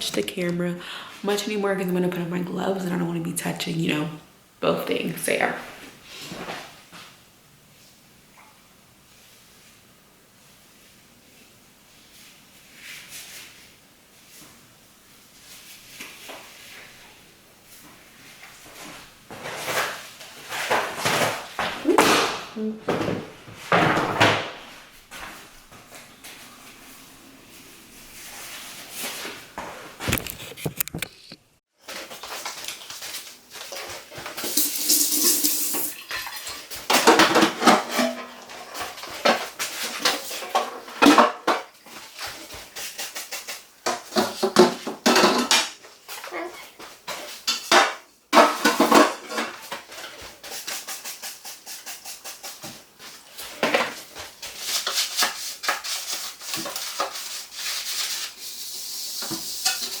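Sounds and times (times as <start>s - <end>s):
dishes clinking and clattering: 34.4s - 41.7s, 43.9s - 45.8s.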